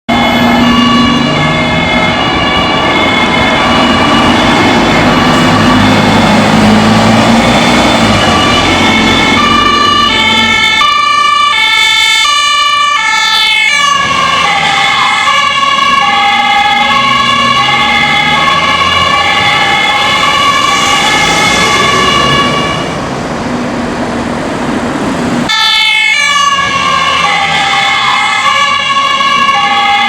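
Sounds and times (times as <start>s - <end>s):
two-tone siren: 0.1s - 23.0s, 25.5s - 30.0s
road and engine noise: 0.1s - 30.0s.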